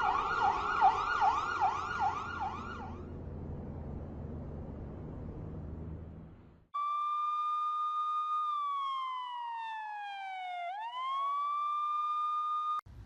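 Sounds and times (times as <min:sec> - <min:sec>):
siren tone: 0:00.0 - 0:03.1, 0:06.8 - 0:12.8.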